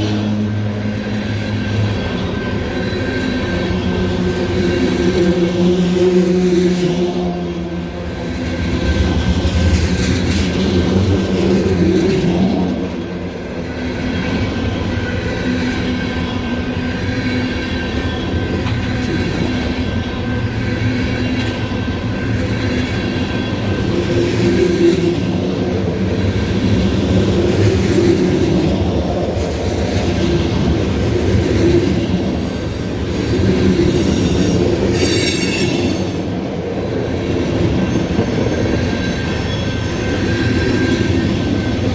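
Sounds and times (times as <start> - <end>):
freight train rolling past: 0.0 - 41.9
high-pitched wheel squeal: 34.0 - 36.2, 37.8 - 41.9.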